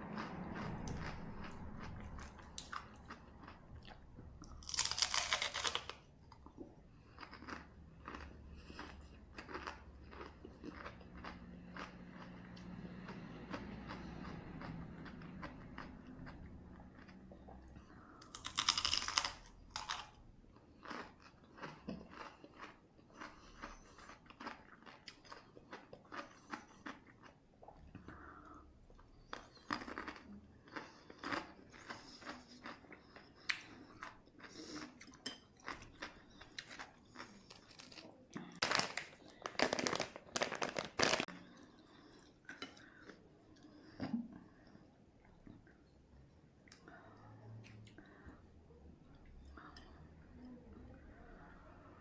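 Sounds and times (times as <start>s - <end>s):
crunchy biting and chewing: 0.1s - 17.5s, 18.2s - 27.4s, 29.2s - 41.4s.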